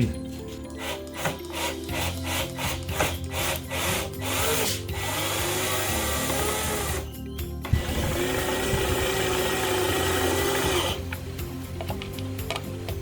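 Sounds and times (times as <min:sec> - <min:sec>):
power drill running: 0:00.8 - 0:07.1, 0:07.7 - 0:11.0.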